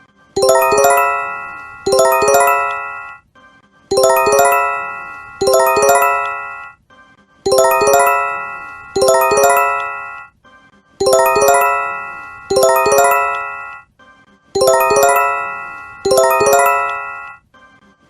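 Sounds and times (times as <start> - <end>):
emergency alert chime: 0.4 - 3.2, 3.9 - 6.8, 7.5 - 10.3, 11.0 - 13.8, 14.6 - 17.4.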